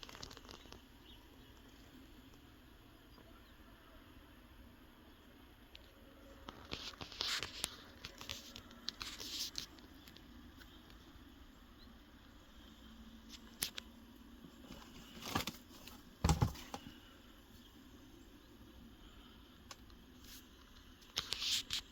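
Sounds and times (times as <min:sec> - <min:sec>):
paper packaging rustling: 0:14.6 - 0:17.0.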